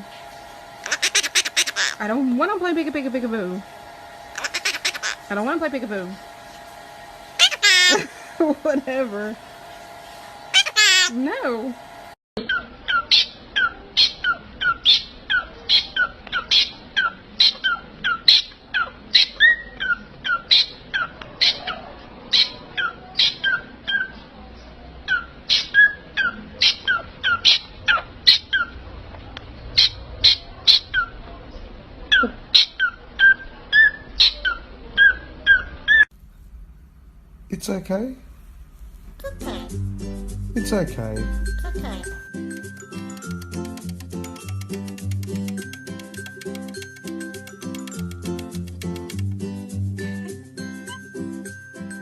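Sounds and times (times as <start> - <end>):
parrot chirping: 0.8 - 2.1, 4.3 - 5.4, 7.4 - 8.3, 10.5 - 11.2, 12.4 - 24.3, 25.1 - 28.8, 32.1 - 36.1.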